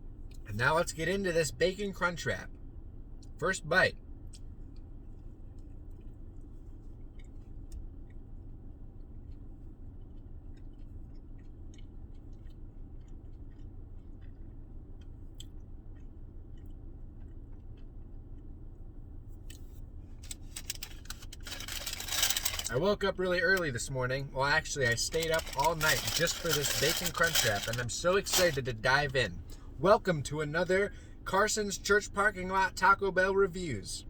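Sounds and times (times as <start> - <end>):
steady low hum: 0.0 - 34.0
person chewing crunchy food: 4.3 - 18.8, 19.4 - 22.9, 24.5 - 28.7.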